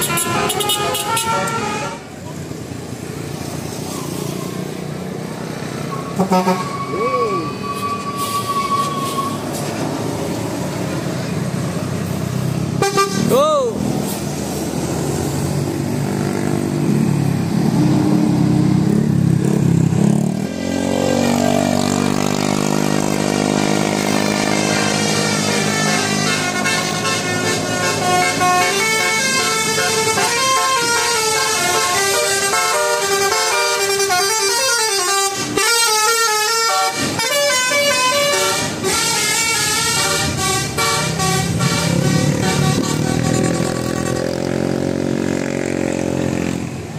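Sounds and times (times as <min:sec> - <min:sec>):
bus horn playing a tune: 0:00.0 - 0:02.2, 0:05.9 - 0:09.4, 0:12.8 - 0:13.4, 0:20.4 - 0:22.1, 0:23.1 - 0:44.7
vehicle engines running: 0:00.0 - 0:46.9.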